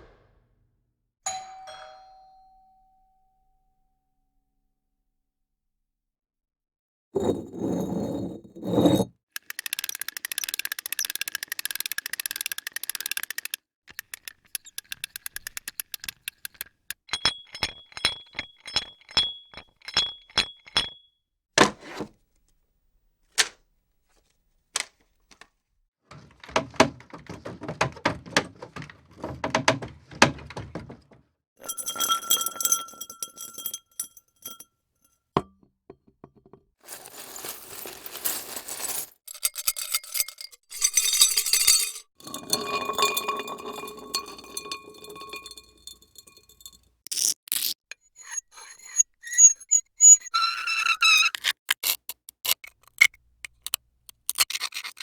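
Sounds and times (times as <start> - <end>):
metallic clinks: 31.6 - 34.7, 37.1 - 46.8
rustling scrape: 36.8 - 39.2
scraping rub: 47.5 - 52.7.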